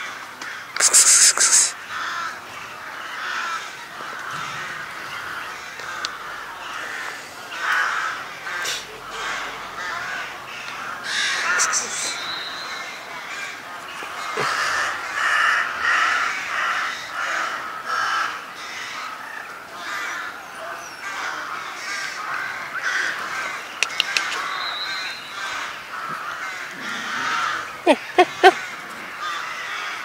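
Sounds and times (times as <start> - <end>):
harsh animal calls: 0.6 - 19.2, 19.8 - 30.0
sharp clicks: 23.8 - 24.4.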